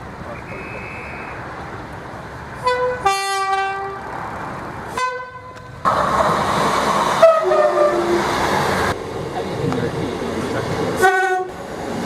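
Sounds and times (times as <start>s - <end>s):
moving train rushing: 0.0s - 12.0s
train two-tone horn: 2.6s - 4.0s, 4.9s - 5.7s, 7.2s - 8.2s, 11.0s - 11.6s.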